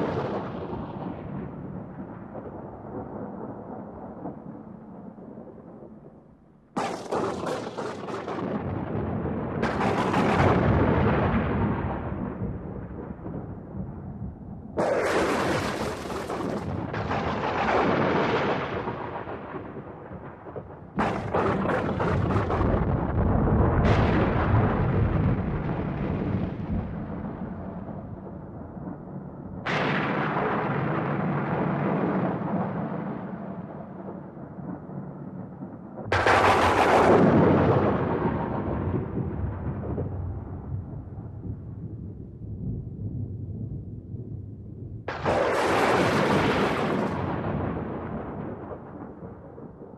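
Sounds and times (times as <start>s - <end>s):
thunder cracks and rumble: 0.0s - 6.2s, 6.8s - 49.9s.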